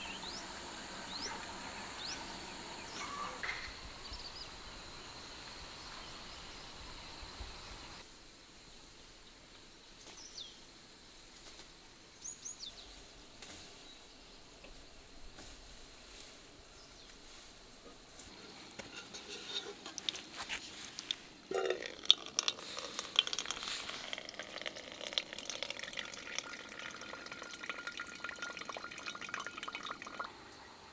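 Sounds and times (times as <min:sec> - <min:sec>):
water running and splashing: 0:19.3 - 0:30.3.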